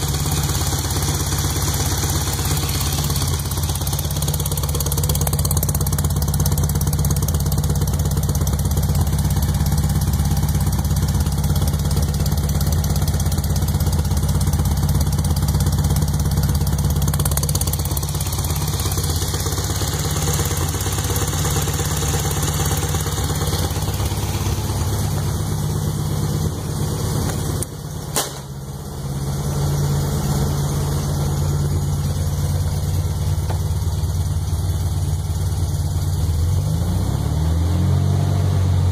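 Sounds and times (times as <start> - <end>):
engine idling: 0.0 - 37.0
sharp engine pop: 27.2 - 28.8.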